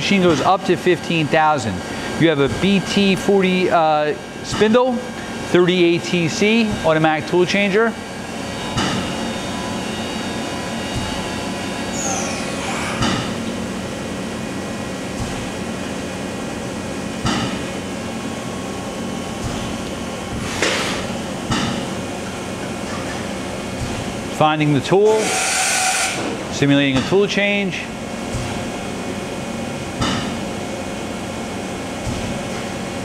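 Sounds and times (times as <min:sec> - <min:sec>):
machining center humming: 0:00.0 - 0:33.0.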